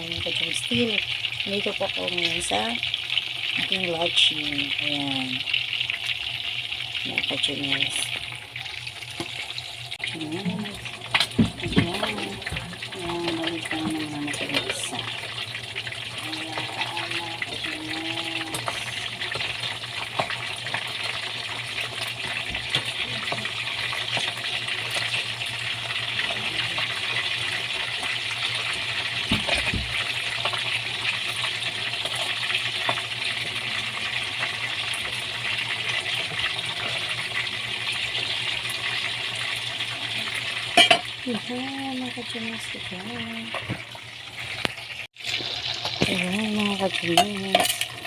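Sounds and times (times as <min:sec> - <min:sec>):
fish frying in hot oil: 0:00.0 - 0:48.0.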